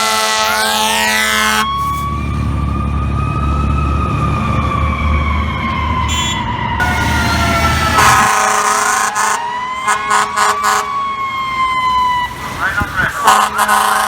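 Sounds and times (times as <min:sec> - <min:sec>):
fire truck air horn: 0:00.0 - 0:02.7, 0:06.0 - 0:14.0
siren wailing: 0:00.0 - 0:14.0
truck engine rumble: 0:00.0 - 0:14.0.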